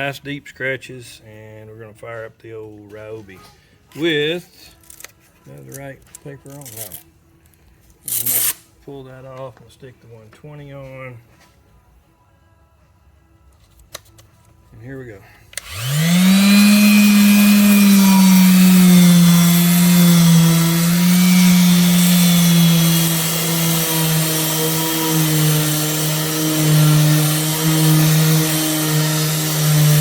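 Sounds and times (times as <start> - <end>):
electric sander motor hum: 15.6 - 30.0.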